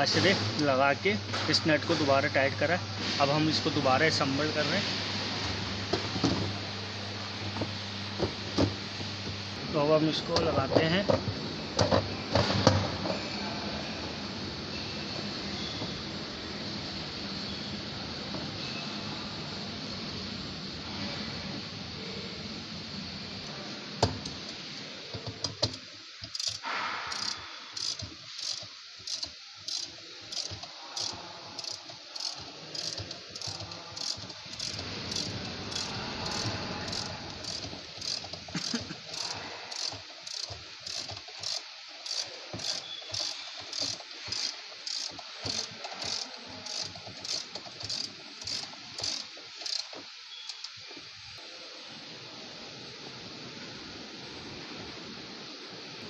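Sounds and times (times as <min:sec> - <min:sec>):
rhythmic metallic clicking: 0:25.6 - 0:50.7.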